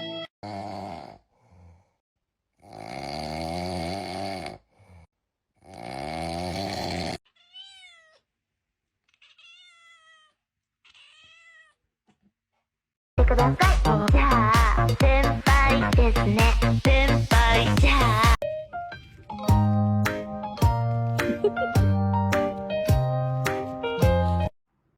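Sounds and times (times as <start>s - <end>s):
cat meowing: 7.3s - 8.3s, 9.0s - 11.9s.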